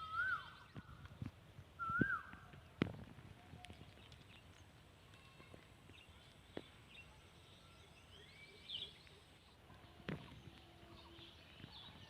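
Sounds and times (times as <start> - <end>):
bird chirps: 0.0 - 1.1, 5.9 - 12.0.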